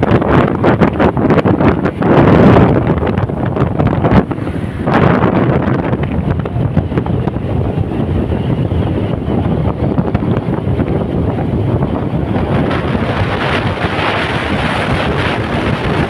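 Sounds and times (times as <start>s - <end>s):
vehicle travelling: 0.0s - 16.0s
wind buffeting microphone: 0.0s - 16.0s.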